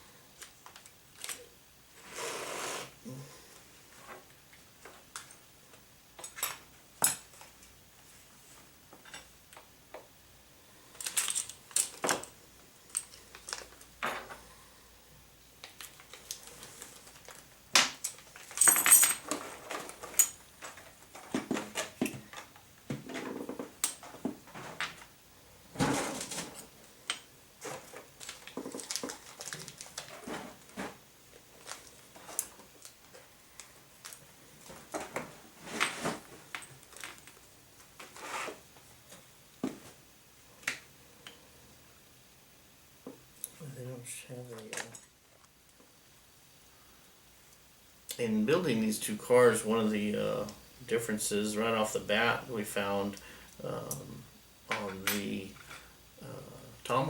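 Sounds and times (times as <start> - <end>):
parts clicking and rattling: 10.9 - 14.4, 15.6 - 25.1.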